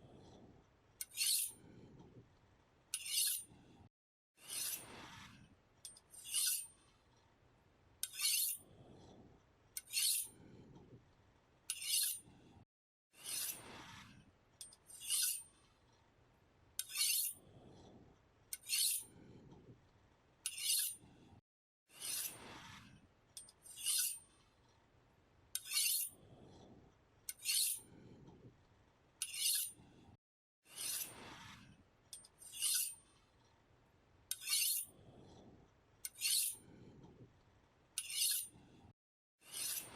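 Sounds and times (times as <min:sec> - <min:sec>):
knife blade scraping on sharpener: 0:01.0 - 0:01.6, 0:02.9 - 0:03.5, 0:04.4 - 0:04.9, 0:05.9 - 0:06.7, 0:08.0 - 0:08.6, 0:09.8 - 0:10.3, 0:11.7 - 0:12.2, 0:13.2 - 0:13.6, 0:14.6 - 0:15.5, 0:16.8 - 0:17.4, 0:18.5 - 0:19.1, 0:20.4 - 0:21.0, 0:22.0 - 0:22.4, 0:23.4 - 0:24.2, 0:25.6 - 0:26.2, 0:27.3 - 0:27.8, 0:29.2 - 0:29.8, 0:30.7 - 0:31.2, 0:32.2 - 0:33.0, 0:34.3 - 0:34.9, 0:36.0 - 0:36.6, 0:38.0 - 0:38.6, 0:39.4 - 0:39.9.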